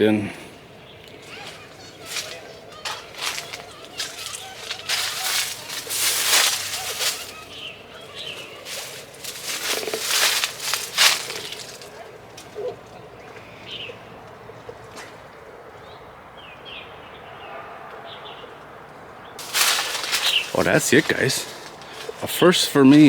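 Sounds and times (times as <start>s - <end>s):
faint bird chirps: 0.6s - 15.1s
rustling: 1.1s - 12.8s, 19.4s - 22.3s.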